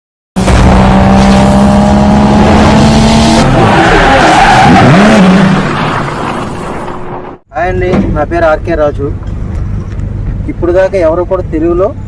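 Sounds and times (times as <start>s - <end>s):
car engine running hard: 0.4s - 5.6s
tyres squealing: 3.5s - 6.2s.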